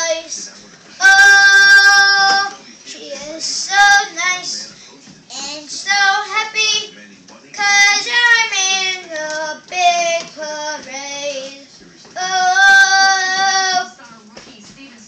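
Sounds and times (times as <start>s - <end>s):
child singing: 1.0s - 4.6s, 5.3s - 6.9s, 7.6s - 11.6s, 12.2s - 13.9s.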